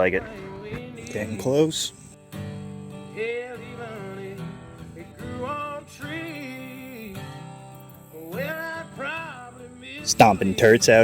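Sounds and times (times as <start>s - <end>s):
country-style music: 0.0s - 11.0s
strummed acoustic guitar: 0.0s - 11.0s.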